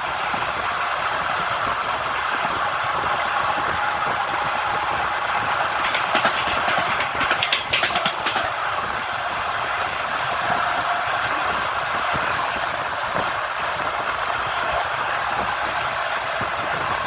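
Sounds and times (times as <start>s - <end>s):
train wheels rumbling on rails: 3.4s - 10.4s
wheels clacking over rail joints: 3.8s - 9.9s.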